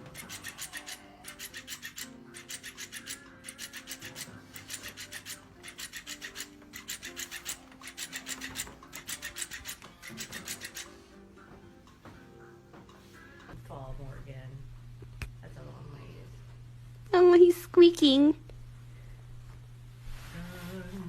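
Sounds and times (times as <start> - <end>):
rapid rasping strokes: 0.0 - 11.0
faint background music: 0.0 - 21.0.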